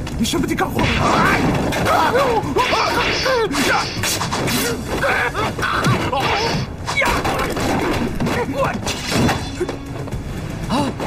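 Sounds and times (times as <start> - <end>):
blows and crashing impacts: 0.8 - 9.6.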